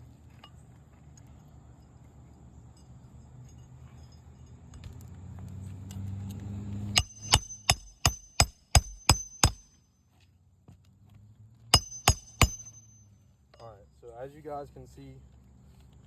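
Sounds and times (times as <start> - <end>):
hammer striking nails: 7.0 - 9.8, 11.7 - 13.0.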